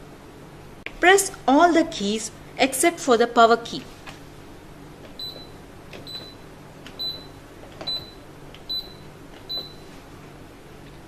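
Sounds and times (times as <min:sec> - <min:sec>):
control panel beeping: 0:05.2 - 0:06.4, 0:07.0 - 0:07.3, 0:07.9 - 0:09.8.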